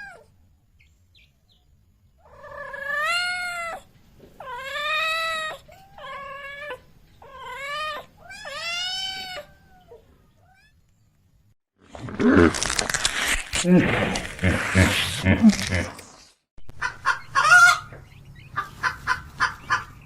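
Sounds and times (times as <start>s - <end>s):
cat meowing: 4.4s - 10.8s.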